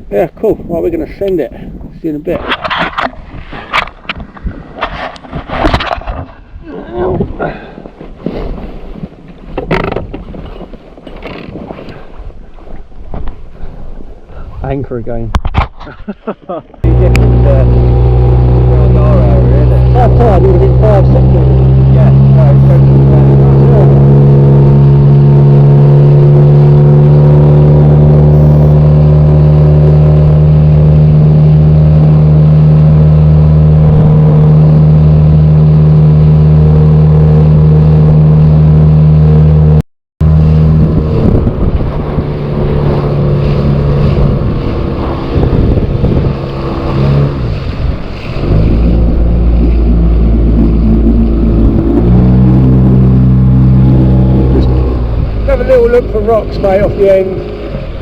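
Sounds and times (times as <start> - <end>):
outboard motor running: 16.8 - 58.0.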